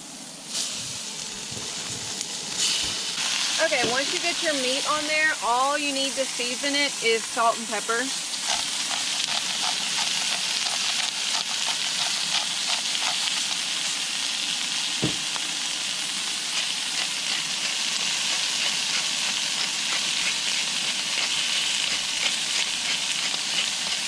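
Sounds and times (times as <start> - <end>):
steak sizzling in hot oil: 0.1 - 24.0
knock: 15.0 - 15.2.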